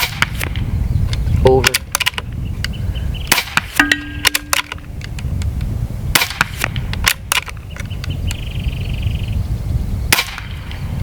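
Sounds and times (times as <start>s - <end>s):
air pistol shots: 0.0s - 0.6s, 3.3s - 5.1s, 6.1s - 7.6s, 10.1s - 10.6s.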